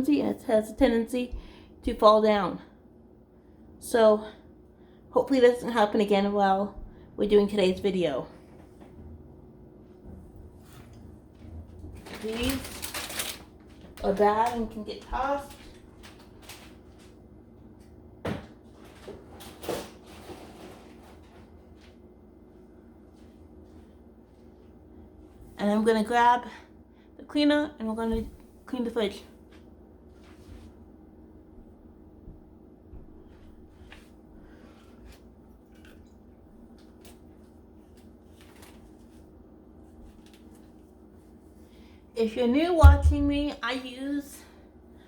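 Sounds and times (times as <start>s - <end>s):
low steady hum: 0.0s - 45.0s
items knocking in fridge: 42.8s - 43.6s.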